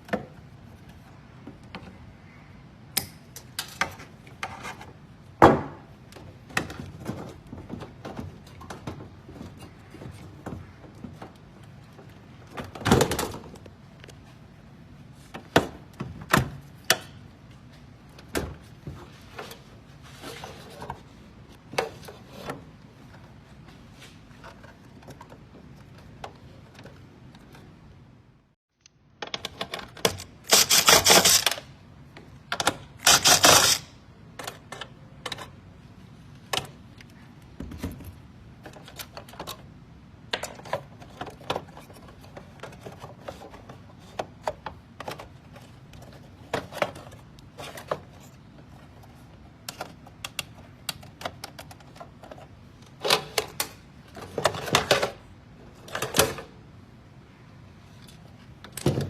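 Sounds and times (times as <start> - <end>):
tools clattering on metal parts: 30.5 - 31.6.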